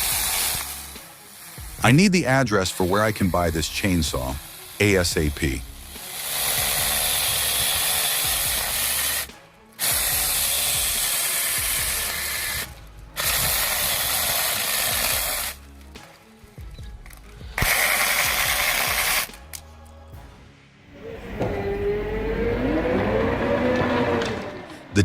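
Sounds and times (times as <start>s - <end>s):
chainsaw cutting wood: 0.0s - 16.2s, 17.1s - 19.6s, 21.0s - 25.0s.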